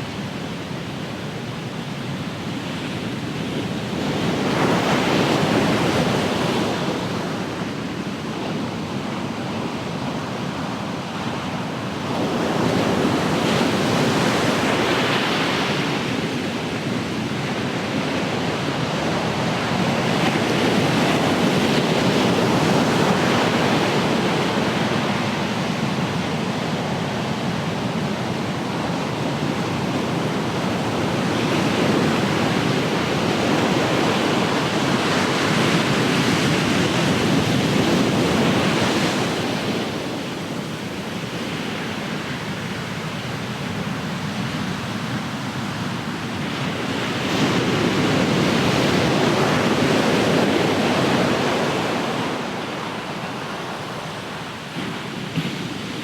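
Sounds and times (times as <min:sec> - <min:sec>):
ocean waves breaking: 0:28.4 - 0:56.0.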